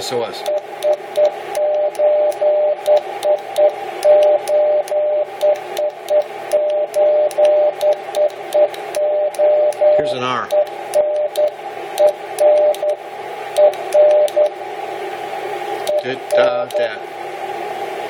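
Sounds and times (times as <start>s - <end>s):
receiver hiss: 0.0s - 18.0s
morse code tone: 0.4s - 13.0s, 13.6s - 14.6s, 15.9s - 16.8s.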